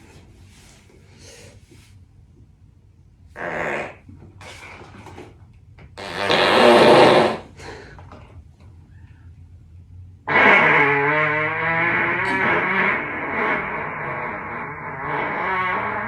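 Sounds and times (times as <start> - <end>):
farts: 3.4 - 5.2, 6.0 - 7.6, 10.3 - 16.0.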